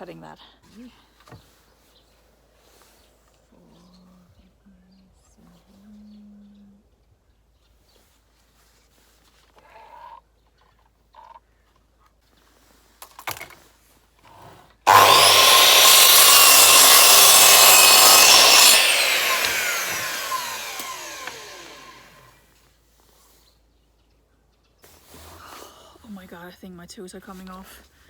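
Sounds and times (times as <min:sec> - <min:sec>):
electric saw cutting wood: 0:14.9 - 0:22.3.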